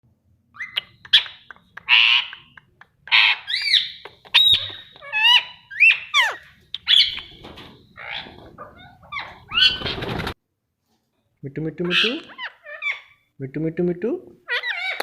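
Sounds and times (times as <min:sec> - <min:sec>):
parrot squawks: 0:00.5 - 0:07.3, 0:11.9 - 0:13.3, 0:14.4 - 0:15.0.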